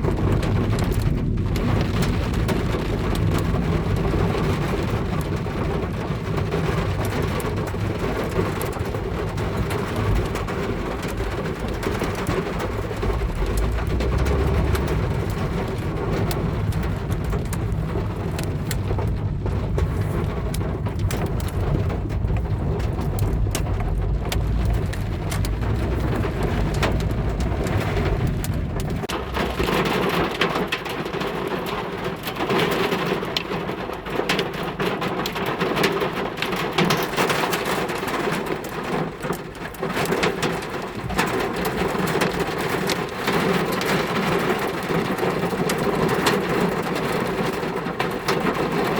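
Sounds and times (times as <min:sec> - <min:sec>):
deep low rumble: 0:00.0 - 0:31.4, 0:40.8 - 0:42.7
heavy rain pelting a car: 0:00.0 - 0:48.9.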